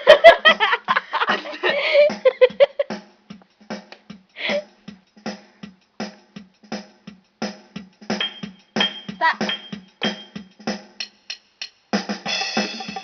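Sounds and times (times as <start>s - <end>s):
drum-machine beat: 2.0s - 13.0s
pitched voice-like sound: 9.2s - 9.5s.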